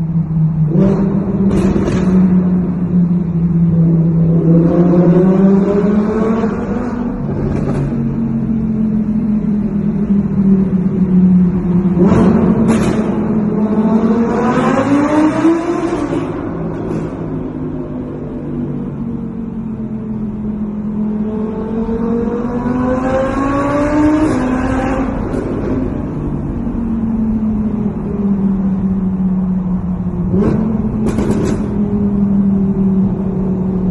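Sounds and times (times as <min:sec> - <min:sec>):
car engine revving: 0:00.2 - 0:33.9
exhaust crackles and pops: 0:30.4 - 0:31.9.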